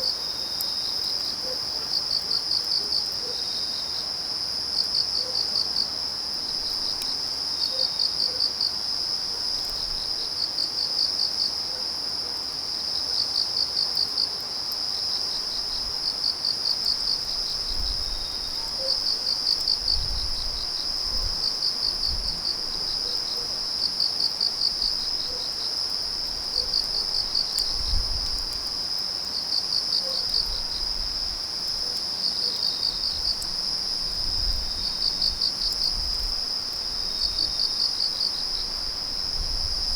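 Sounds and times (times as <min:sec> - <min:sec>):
cricket trilling: 0:13.6 - 0:39.9.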